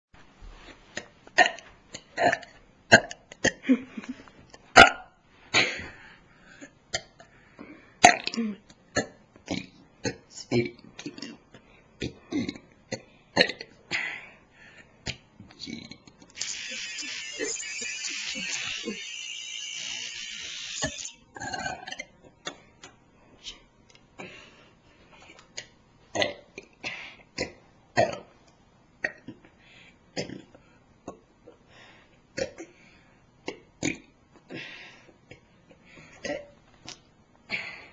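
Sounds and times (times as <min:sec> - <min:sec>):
person burping: 0:02.2 - 0:03.7, 0:16.4 - 0:22.1, 0:36.2 - 0:36.6.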